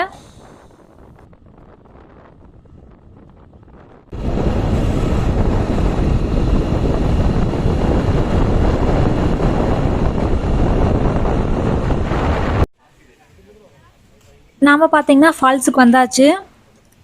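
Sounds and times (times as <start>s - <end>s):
wind buffeting microphone: 0.0s - 12.7s.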